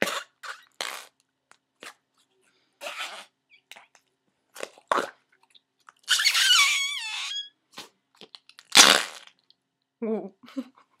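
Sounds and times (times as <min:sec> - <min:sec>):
putty squelching fart noise: 0:00.0 - 0:01.2, 0:02.8 - 0:03.4, 0:04.6 - 0:05.2, 0:06.0 - 0:07.9, 0:08.7 - 0:09.3.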